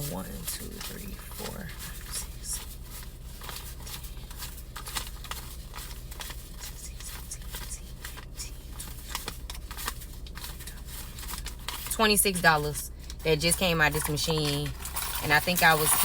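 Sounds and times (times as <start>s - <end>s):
paper money rustling and flicking: 0.0s - 12.4s.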